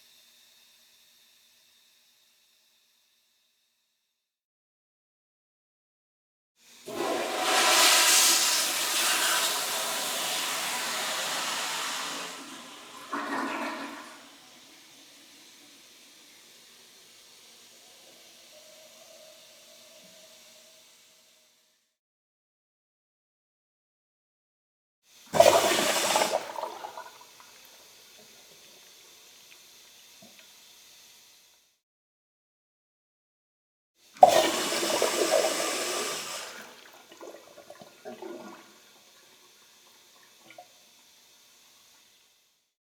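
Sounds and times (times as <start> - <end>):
toilet flushing: 6.8 - 21.4, 25.3 - 29.2, 34.2 - 41.2.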